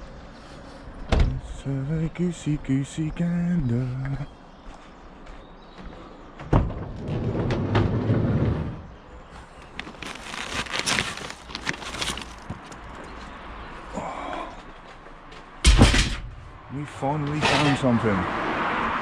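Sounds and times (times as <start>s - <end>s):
low scraping and rustling: 6.5s - 13.3s, 17.2s - 18.2s
crackly clatters: 9.3s - 13.3s.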